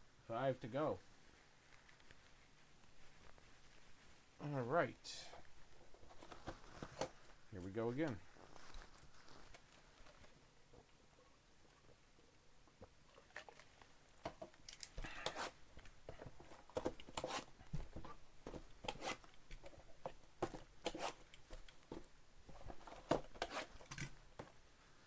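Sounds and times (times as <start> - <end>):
plastic wrappers crinkling and tearing: 8.1 - 10.4.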